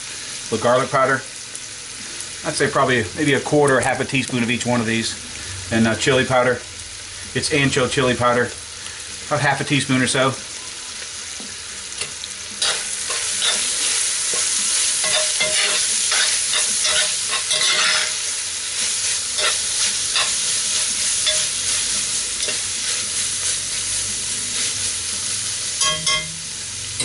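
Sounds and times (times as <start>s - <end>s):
meat sizzling in a pan: 0.0s - 27.0s
utensil scraping iron pan: 12.6s - 18.2s.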